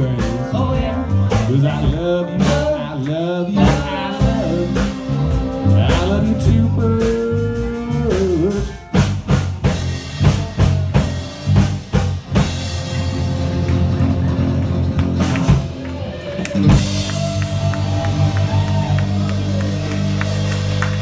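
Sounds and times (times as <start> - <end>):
bass guitar: 0.0 - 21.0
electric guitar: 0.0 - 21.0
steady drums: 0.0 - 21.0
hard drum kit hits: 3.6 - 15.8, 16.6 - 21.0.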